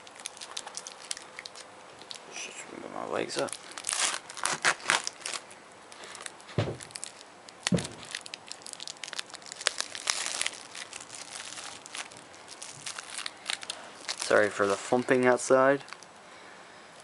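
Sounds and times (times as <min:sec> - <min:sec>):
plastic wrapping tearing and crinkling: 0:00.0 - 0:16.1
dull thumps outside: 0:06.5 - 0:06.9, 0:07.7 - 0:08.2.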